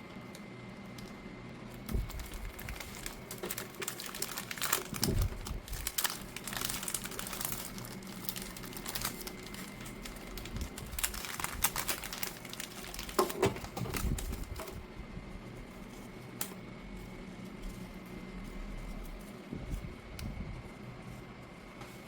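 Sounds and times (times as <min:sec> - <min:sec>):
wrapper crinkling and clicking: 0:00.3 - 0:14.8.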